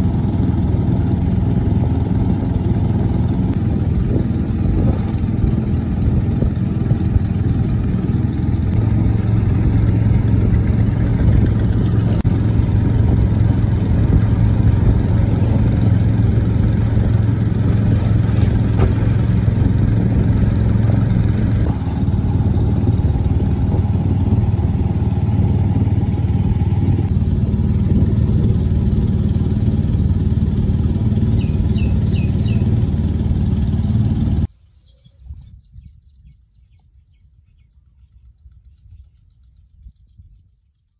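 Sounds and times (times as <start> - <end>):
engine running: 0.0 - 34.6.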